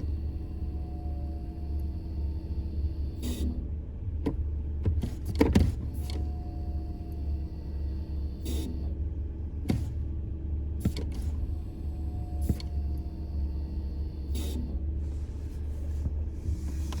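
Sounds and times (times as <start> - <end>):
vehicle low rumble: 0.0 - 17.0
brake squeal: 6.0 - 8.9, 11.2 - 17.0.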